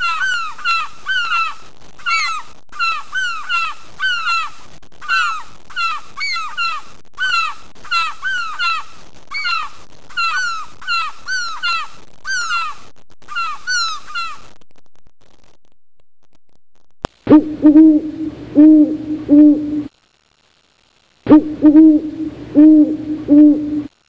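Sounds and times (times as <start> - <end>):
seagulls calling: 0.0 - 4.5, 5.1 - 12.7, 17.3 - 19.9, 21.3 - 23.9
owl hooting: 0.0 - 12.7, 13.3 - 14.4, 17.3 - 19.9, 21.3 - 23.9.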